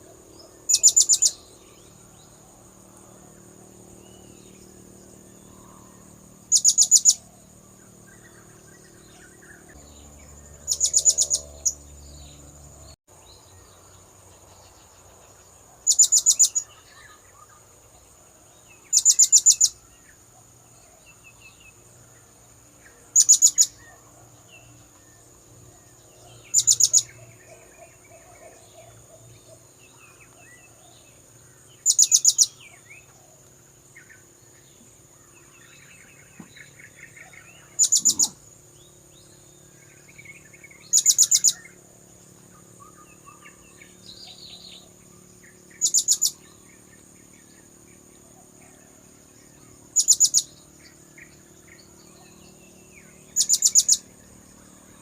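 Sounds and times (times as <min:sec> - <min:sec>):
parrot high-pitched chirps: 0:37.8 - 0:38.4.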